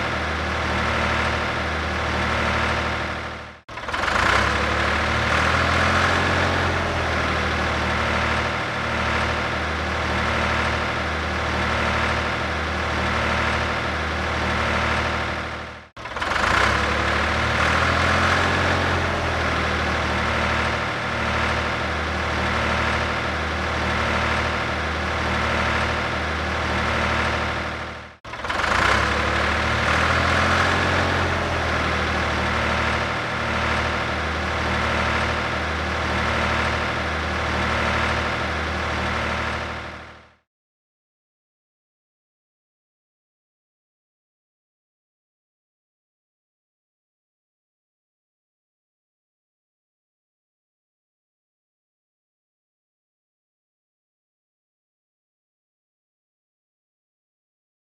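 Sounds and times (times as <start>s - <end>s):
tractor diesel engine running: 0.0s - 40.4s.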